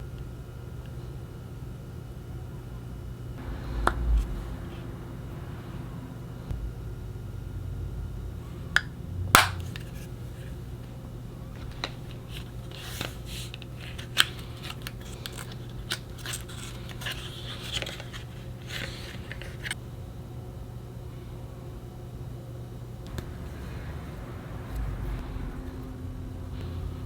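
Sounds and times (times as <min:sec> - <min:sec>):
steady low hum: 0:00.0 - 0:27.0
sharp snap: 0:09.4 - 0:09.7.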